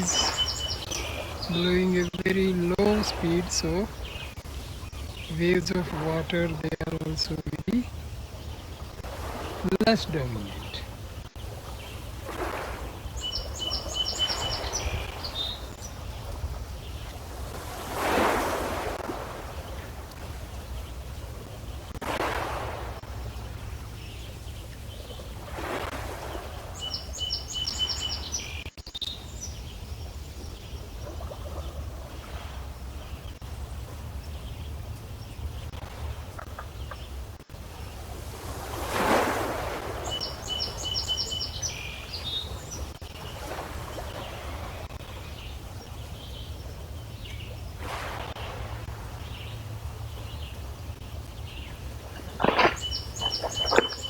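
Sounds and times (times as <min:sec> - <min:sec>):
bird singing high notes: 0:00.0 - 0:02.1, 0:52.2 - 0:54.0
wind rumble on microphone: 0:00.0 - 0:09.7, 0:10.4 - 0:54.0
lake waves lapping at shore: 0:00.0 - 0:54.0.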